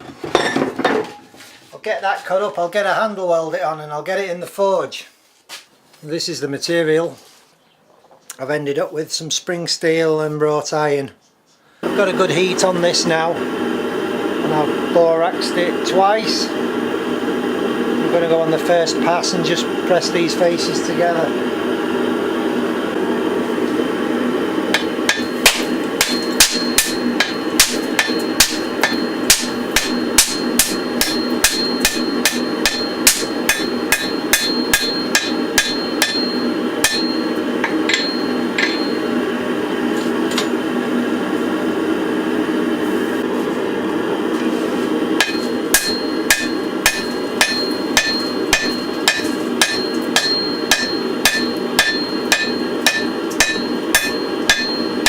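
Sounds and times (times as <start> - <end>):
hammer blows on hot iron ringing: 24.7 - 39.2, 45.2 - 55.0.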